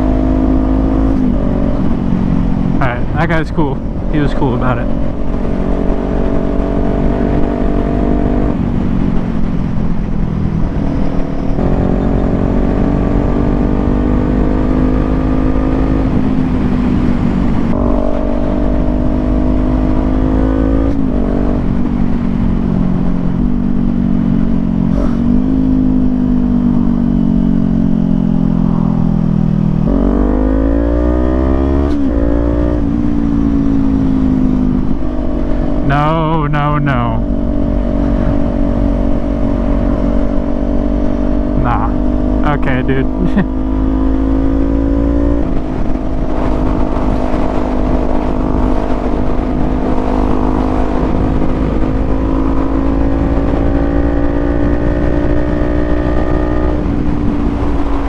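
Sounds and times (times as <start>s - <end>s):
motorcycle engine revving: 0.0s - 3.2s, 4.7s - 58.0s
wind rumble on microphone: 0.0s - 35.9s, 37.0s - 42.5s, 43.1s - 58.0s.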